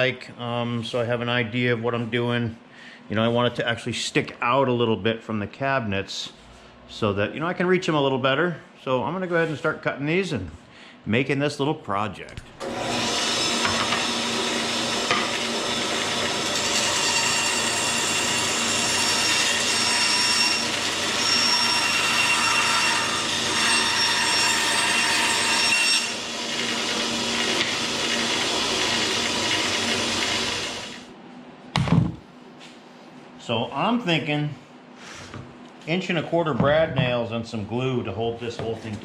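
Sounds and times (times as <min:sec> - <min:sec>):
power saw cutting plywood: 0:12.6 - 0:31.1.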